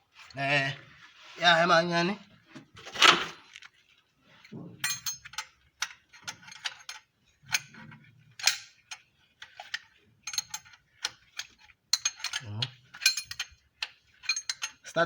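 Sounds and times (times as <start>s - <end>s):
metallic clicks and clinks: 4.8s - 7.8s, 8.4s - 15.0s.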